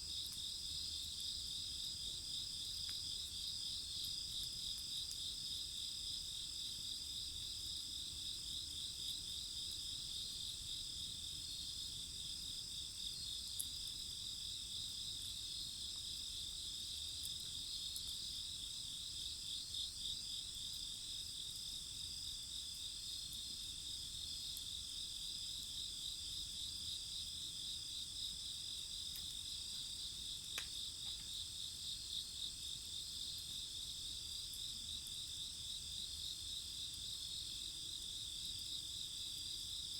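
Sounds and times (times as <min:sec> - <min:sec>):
faint sharp ticks: 0:30.5 - 0:31.3.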